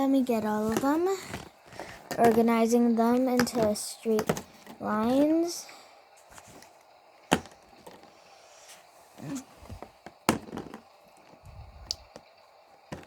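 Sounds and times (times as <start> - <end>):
plastic toys clicking and knocking: 0.3 - 5.3, 9.8 - 11.4.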